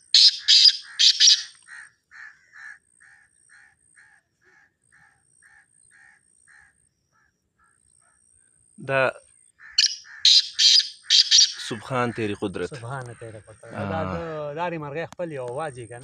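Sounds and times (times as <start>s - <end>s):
francolin calling: 0.0s - 2.4s, 9.6s - 12.3s.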